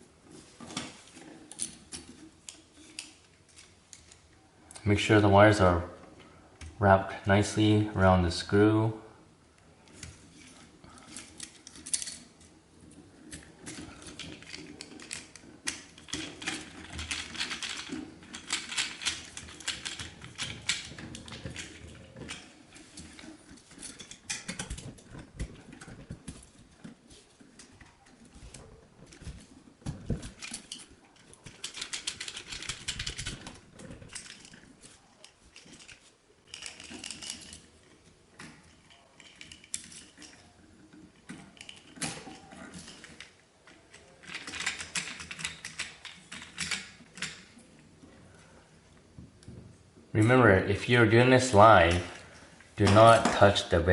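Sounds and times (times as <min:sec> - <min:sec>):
screwdriver and wires clicking scraping: 0:09.9 - 0:47.6.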